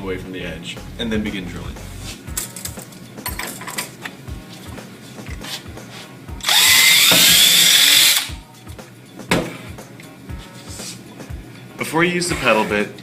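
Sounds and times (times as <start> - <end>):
background music with steady beat: 0.0 - 13.0
power drill boring into wood: 6.4 - 8.3.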